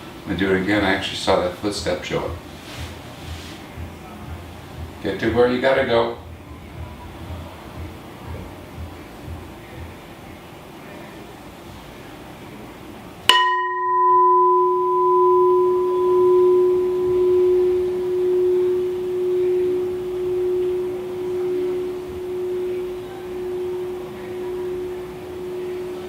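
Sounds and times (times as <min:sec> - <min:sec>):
struck vessel ringing: 0:13.3 - 0:26.0.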